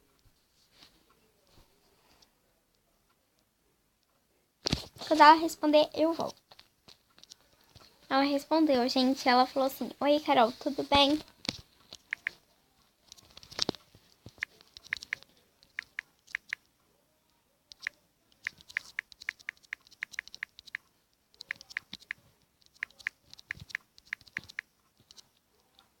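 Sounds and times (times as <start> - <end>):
phone keyboard clicks: 11.4 - 12.4, 13.1 - 16.6, 17.7 - 25.9.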